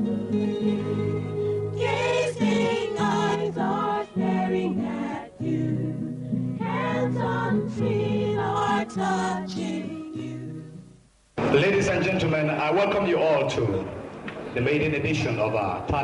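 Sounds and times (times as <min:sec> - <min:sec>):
choir singing gospel: 0:00.0 - 0:10.9.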